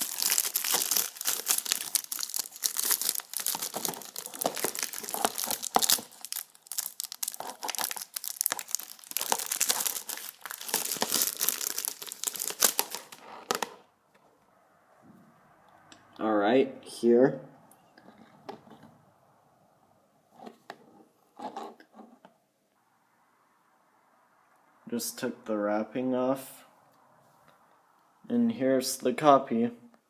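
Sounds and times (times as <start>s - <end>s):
plastic wrap crinkling and tearing: 0.0s - 13.8s.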